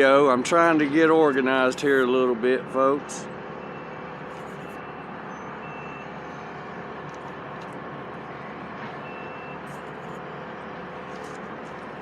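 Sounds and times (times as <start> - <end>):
backup alarm beep: 4.7 - 6.1, 9.0 - 9.7.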